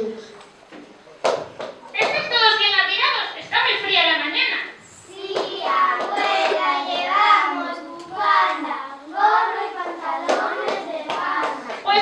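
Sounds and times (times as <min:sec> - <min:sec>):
children singing: 0:05.1 - 0:11.8.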